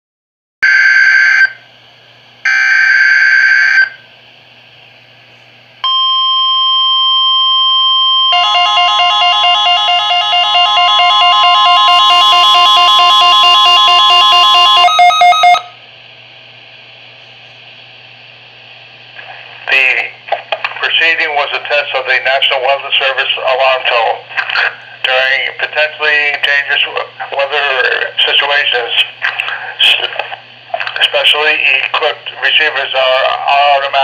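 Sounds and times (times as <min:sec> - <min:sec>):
pulsing multi-tone alarm: 0:00.6 - 0:01.6, 0:02.5 - 0:04.0, 0:05.8 - 0:15.8
steady radio alert tone: 0:05.8 - 0:15.8, 0:19.2 - 0:34.0
radio static hiss: 0:18.8 - 0:34.0.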